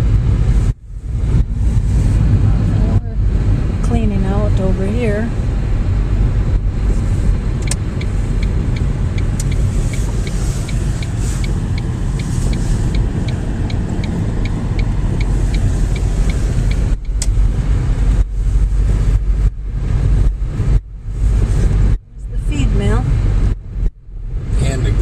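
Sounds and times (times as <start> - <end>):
car road and engine rumble: 0.0 - 25.0
turn signal ticking: 5.9 - 24.0.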